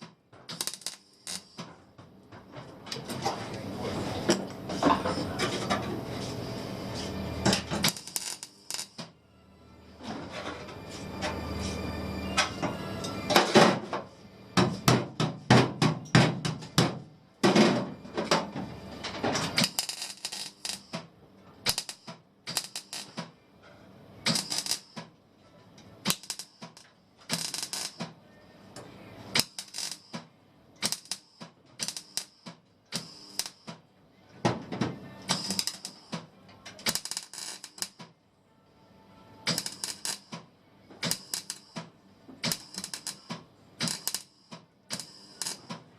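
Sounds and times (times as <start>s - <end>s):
welding crackling bursts: 0.5s - 1.7s, 7.8s - 9.1s, 19.6s - 21.0s, 21.7s - 23.3s, 24.3s - 25.1s, 26.1s - 28.1s, 29.4s - 30.2s, 30.8s - 33.8s, 35.3s - 36.2s, 36.9s - 38.1s, 39.5s - 40.4s, 41.1s - 41.9s, 42.5s - 45.8s.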